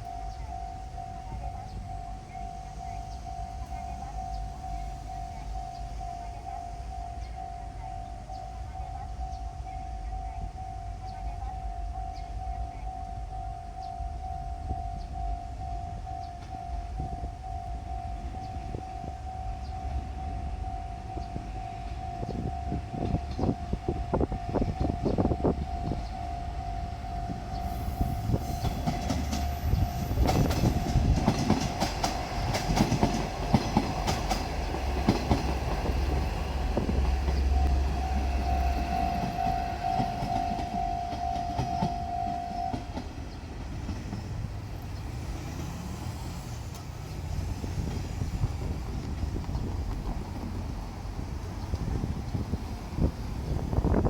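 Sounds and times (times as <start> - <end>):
level crossing bell dinging: 0.0 - 34.8, 35.8 - 43.0
diesel railcar engine rumble: 0.0 - 54.0
train wheels clacking on rails: 0.0 - 54.0.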